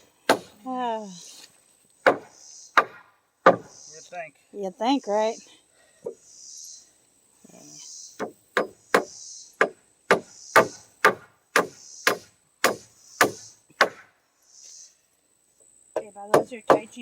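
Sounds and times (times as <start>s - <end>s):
hammer striking nails into wood: 8.2s - 14.0s.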